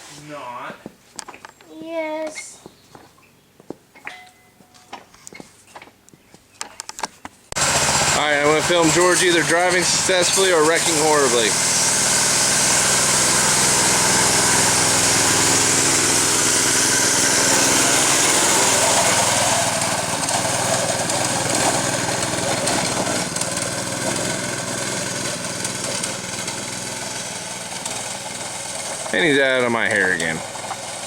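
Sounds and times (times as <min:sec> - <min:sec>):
atv engine running: 0:07.6 - 0:31.0.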